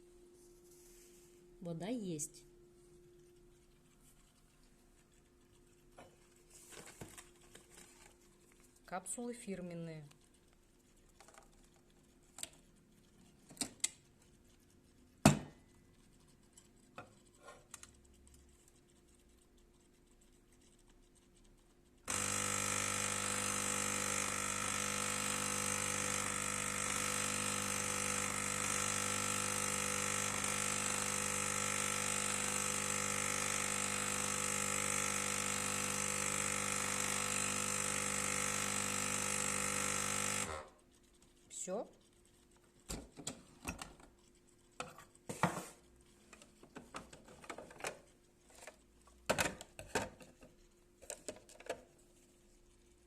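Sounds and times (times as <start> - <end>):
coffee machine pump humming: 22.1 - 40.8.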